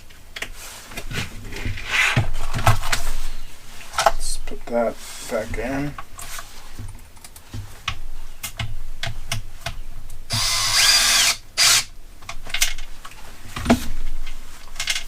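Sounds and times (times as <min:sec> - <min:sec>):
electric drill whirring: 0:10.3 - 0:11.9.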